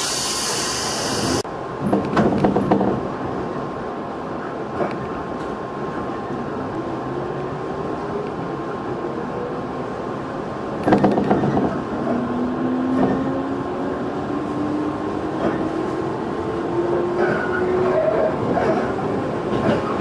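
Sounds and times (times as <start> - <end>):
train wheels rumbling on rail: 0.0 - 20.0
rail-joint clacks: 1.8 - 3.1, 10.8 - 12.2, 15.4 - 16.0, 17.1 - 20.0.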